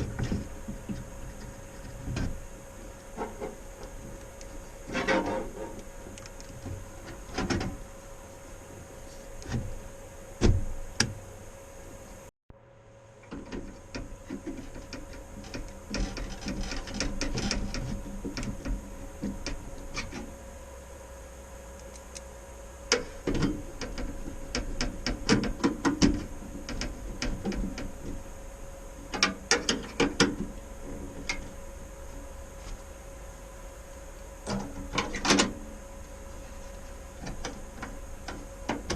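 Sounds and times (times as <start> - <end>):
clicks and rattling inside computer case: 13.3 - 20.3, 22.9 - 28.1, 29.1 - 31.5.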